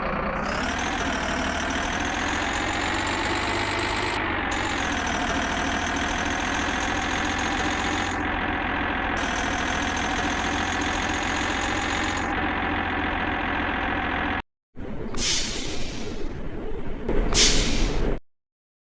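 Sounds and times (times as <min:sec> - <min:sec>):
large engine idling: 0:00.0 - 0:15.2.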